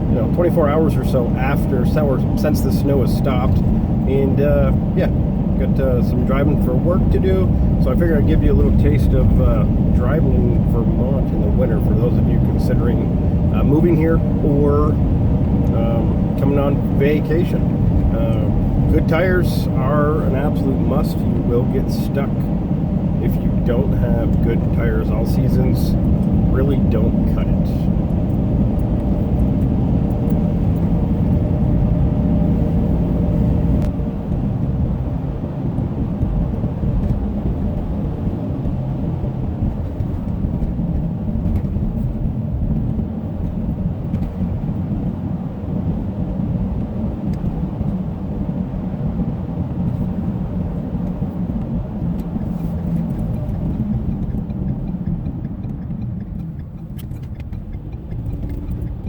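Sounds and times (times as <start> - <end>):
tire noise on snowy road: 0.0 - 59.0
faint ticks: 52.2 - 59.0.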